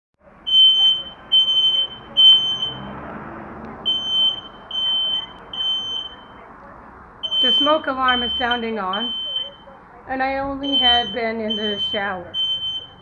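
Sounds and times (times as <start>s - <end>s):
smoke alarm beeping: 0.4s - 2.9s, 3.9s - 6.5s, 7.2s - 9.8s, 10.6s - 13.0s.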